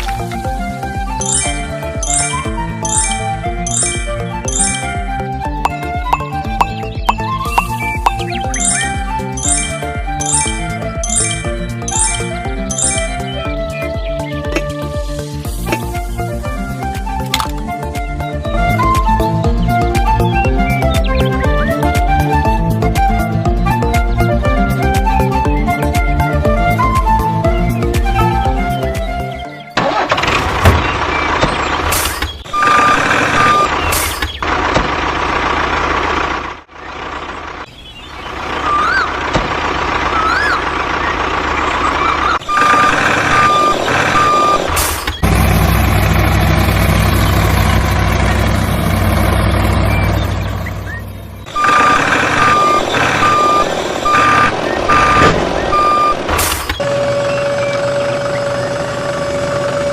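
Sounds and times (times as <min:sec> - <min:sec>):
truck engine running: 0:00.0 - 0:25.4, 0:29.8 - 0:59.9
reversing alarm beeps: 0:32.5 - 0:33.8, 0:42.1 - 0:44.8, 0:51.5 - 0:59.9.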